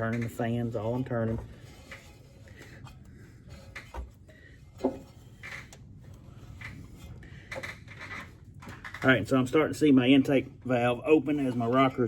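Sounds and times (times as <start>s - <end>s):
engine parts clicking and knocking: 0.0s - 5.8s, 6.4s - 9.5s.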